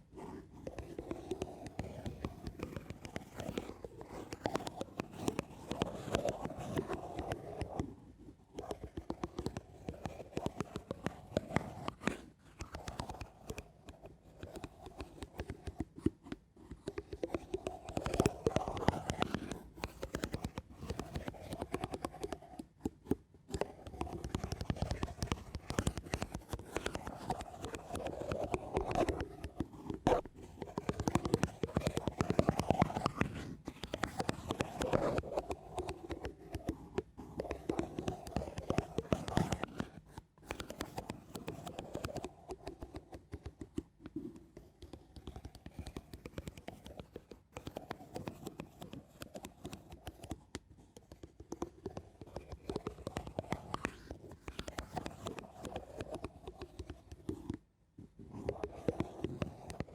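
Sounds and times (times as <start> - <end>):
scratching on a surface: 0.2 - 59.9.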